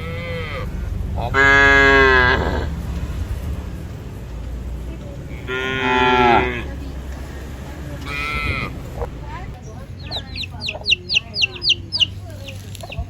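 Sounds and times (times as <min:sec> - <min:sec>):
cattle mooing: 0:00.0 - 0:03.1, 0:05.3 - 0:06.9, 0:08.0 - 0:09.1
steady low rumble: 0:00.0 - 0:13.0.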